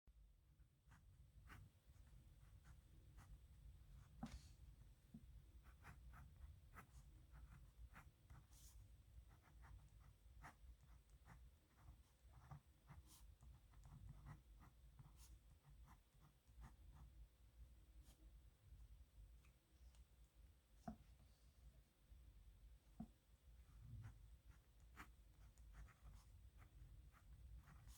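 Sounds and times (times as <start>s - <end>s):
pen scratching on paper: 5.6s - 17.1s, 24.0s - 27.9s.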